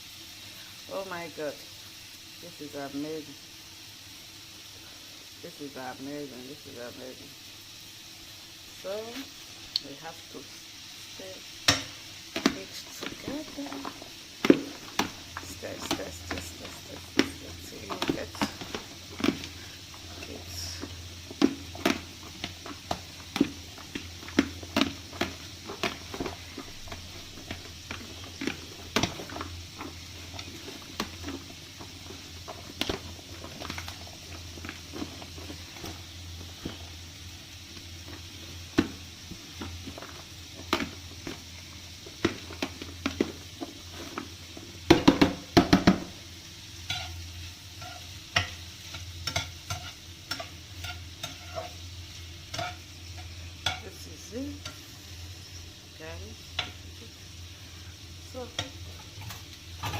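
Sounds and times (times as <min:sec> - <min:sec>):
soft sizzle: 0:00.0 - 0:59.9
utensil scraping a frying pan: 0:46.8 - 0:54.0.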